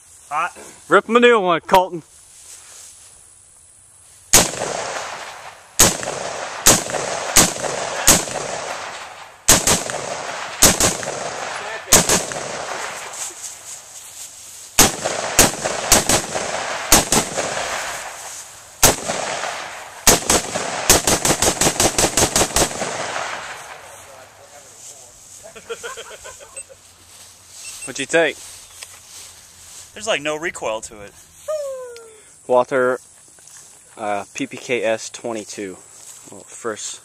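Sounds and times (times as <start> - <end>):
echoing gunshots: 4.3 - 13.2, 14.8 - 24.4.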